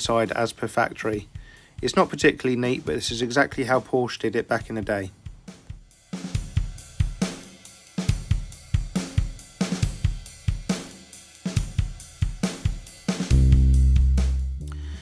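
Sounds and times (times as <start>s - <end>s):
drum-kit beat with cymbals: 0.0s - 15.0s.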